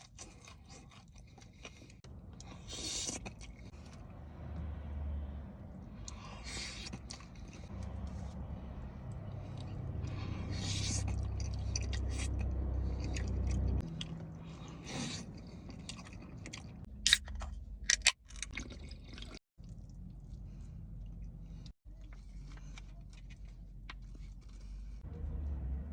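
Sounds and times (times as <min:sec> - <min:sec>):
chewing and crunching: 0:00.0 - 0:04.2, 0:05.8 - 0:25.1
low hum: 0:07.0 - 0:15.7.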